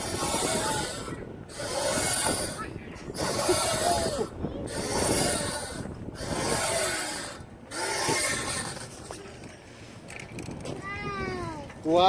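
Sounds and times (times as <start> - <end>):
swing chain creaking: 0.0 - 9.4.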